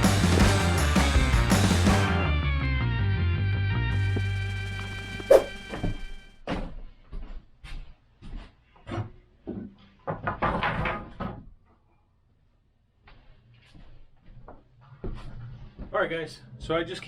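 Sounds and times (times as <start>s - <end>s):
background music: 0.0s - 6.4s.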